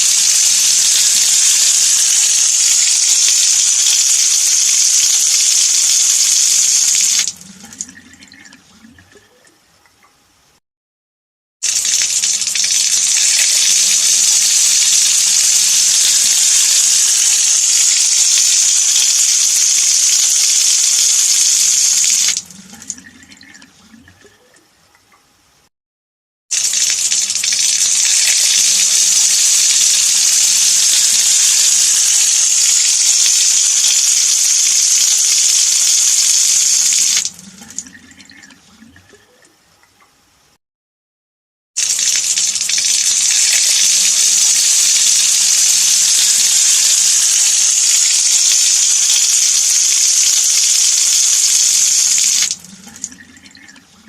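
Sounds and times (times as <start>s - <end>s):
tap water running into sink: 0.0s - 9.2s, 11.6s - 24.3s, 26.6s - 39.2s, 41.8s - 53.8s
water trickling and dripping: 7.2s - 10.3s, 22.3s - 25.3s, 37.2s - 40.2s, 50.6s - 54.0s.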